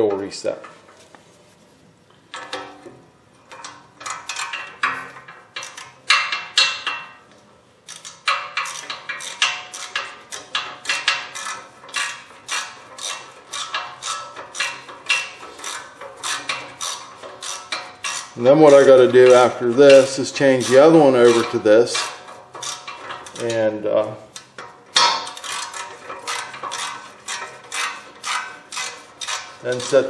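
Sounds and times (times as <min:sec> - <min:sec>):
hand tools clinking on metal: 0:07.9 - 0:30.0
sharp ratchet clicks: 0:07.9 - 0:30.0.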